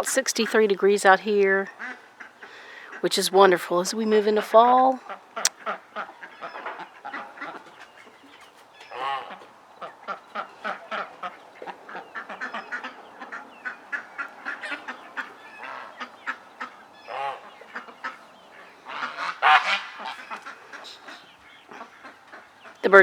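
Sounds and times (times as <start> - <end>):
geese ducks and chickens calling: 0.0 - 23.0.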